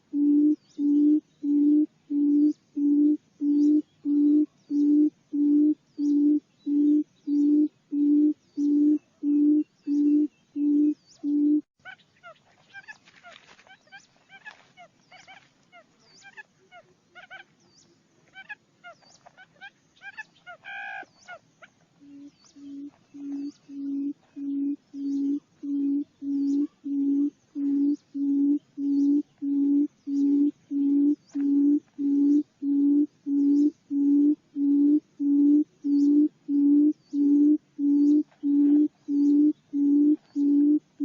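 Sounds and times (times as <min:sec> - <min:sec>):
birds chirping: 0:00.0 - 0:41.0
bird deep booming hoots: 0:22.0 - 0:41.0.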